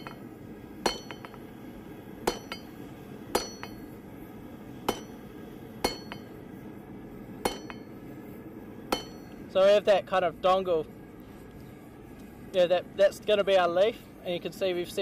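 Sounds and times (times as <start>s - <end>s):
hammer striking steel on anvil: 0.0s - 1.5s, 2.2s - 4.0s, 4.8s - 6.4s, 7.4s - 8.0s, 8.9s - 9.4s.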